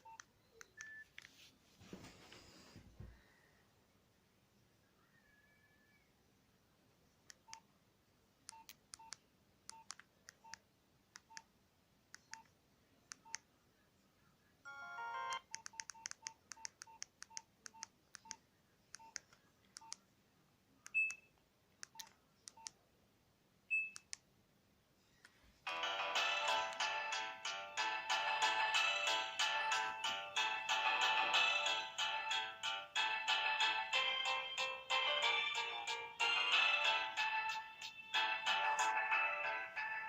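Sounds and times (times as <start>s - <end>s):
ringtone melody: 14.7s - 15.4s, 25.7s - 40.0s
phone keypad clicks with beeps: 15.1s - 18.4s.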